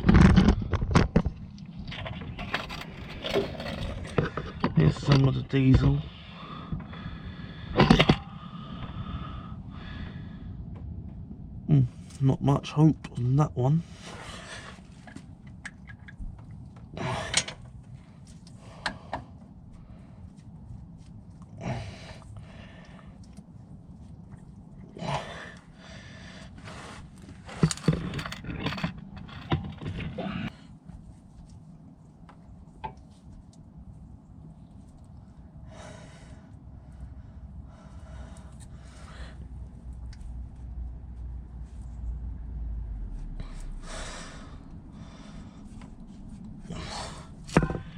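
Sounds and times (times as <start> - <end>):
low handling rumble: 0.0 - 13.3, 35.2 - 47.9
person breathing out hard: 6.1 - 10.6, 21.6 - 23.2, 43.2 - 45.8.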